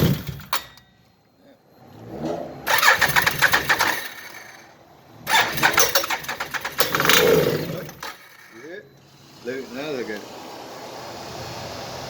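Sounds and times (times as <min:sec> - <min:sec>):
atv engine starting: 0:00.0 - 0:00.8, 0:01.8 - 0:08.8.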